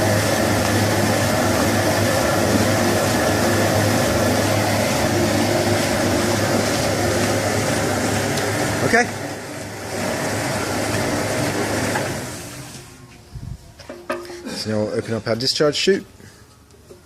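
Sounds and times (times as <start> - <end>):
powder mixer humming and hissing: 0.0 - 13.1.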